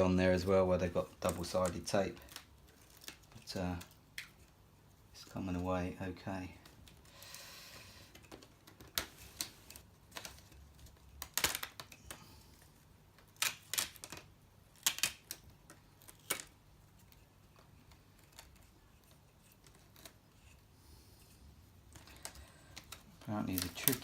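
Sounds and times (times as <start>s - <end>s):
plastic clips snapping loose: 8.1s - 12.3s, 13.2s - 16.6s.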